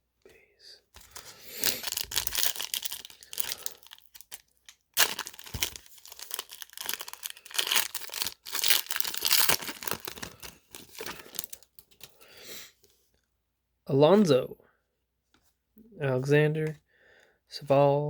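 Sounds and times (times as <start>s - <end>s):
wrapper crinkling: 1.0s - 12.1s
wrapper tearing: 1.0s - 12.1s.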